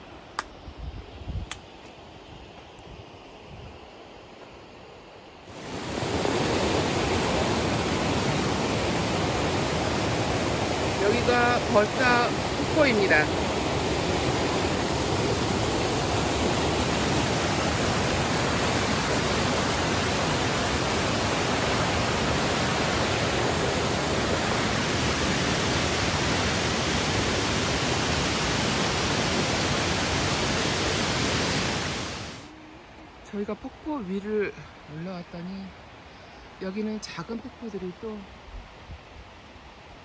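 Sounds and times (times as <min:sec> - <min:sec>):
waterfall rushing: 0:05.5 - 0:32.9.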